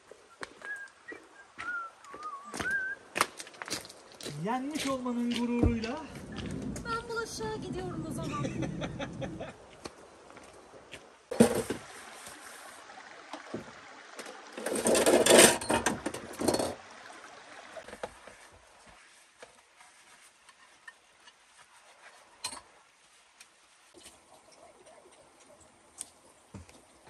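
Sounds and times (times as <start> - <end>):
rushing water at sink: 11.3 - 18.6.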